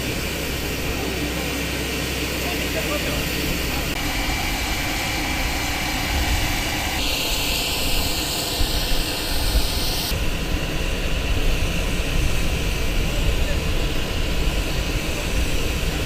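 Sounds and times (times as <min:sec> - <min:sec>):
aircraft engine noise: 0:00.0 - 0:16.0.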